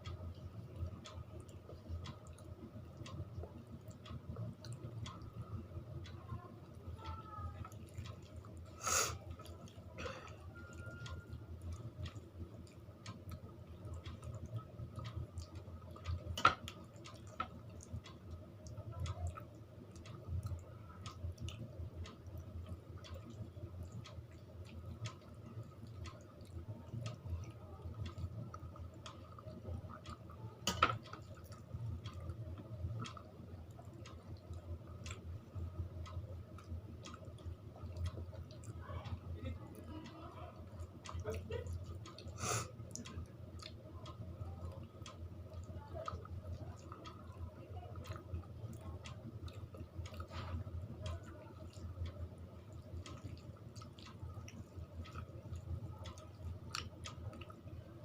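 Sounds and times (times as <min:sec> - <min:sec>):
steady low hum: 0:00.0 - 0:58.0
wet chewing: 0:40.0 - 0:57.9.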